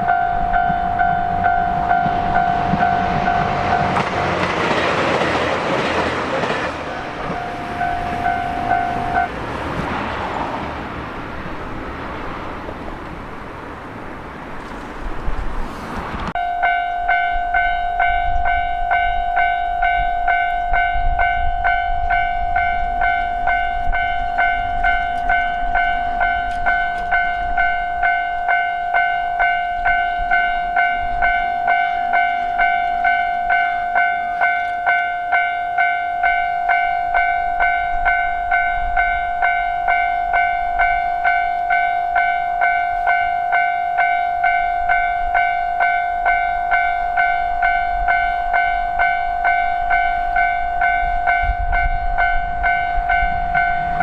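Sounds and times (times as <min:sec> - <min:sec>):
level-crossing alarm ringing: 0:00.0 - 0:09.8, 0:16.4 - 0:54.0
low rumble: 0:51.4 - 0:54.0.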